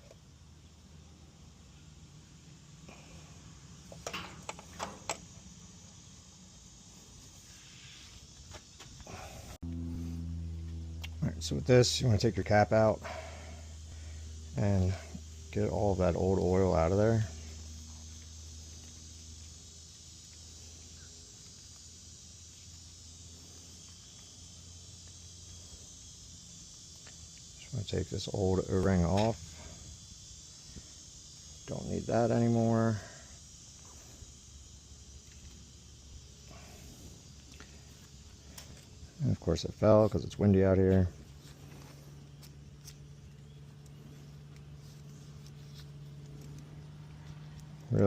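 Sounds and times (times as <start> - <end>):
insects chirring: 0.0 - 48.0
low steady hum: 0.0 - 48.0
steady low rumble: 9.1 - 21.6.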